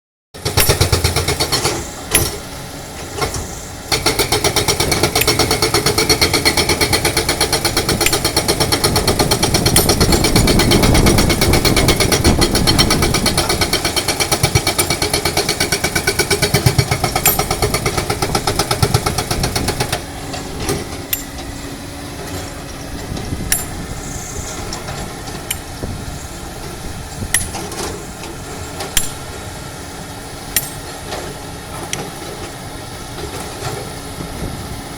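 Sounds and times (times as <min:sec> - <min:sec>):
hydraulic breaker hammering rock: 0:00.4 - 0:02.5, 0:03.1 - 0:21.5, 0:22.3 - 0:26.0, 0:27.2 - 0:29.5, 0:30.5 - 0:32.2
sharp metallic knocks: 0:00.4 - 0:02.5, 0:03.2 - 0:20.0, 0:20.6 - 0:21.5, 0:22.3 - 0:23.8, 0:27.3 - 0:27.9, 0:28.9 - 0:29.4, 0:30.6 - 0:31.0
excavator engine running: 0:00.4 - 0:34.9.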